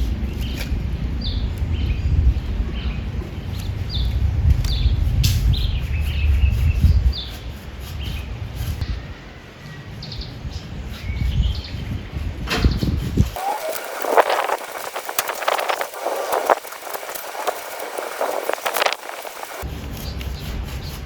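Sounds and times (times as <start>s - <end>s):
small birds chirping: 9.9s - 19.6s.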